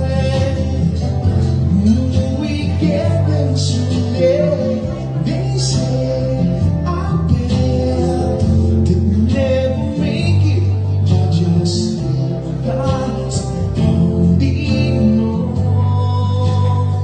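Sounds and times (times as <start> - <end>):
guitar: 0.0 - 17.0
person singing: 0.0 - 17.0.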